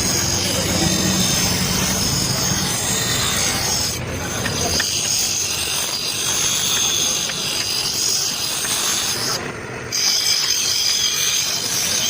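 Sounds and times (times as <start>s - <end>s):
high-pitched whine: 0.0s - 4.1s
metal grinding rasp: 0.0s - 12.0s.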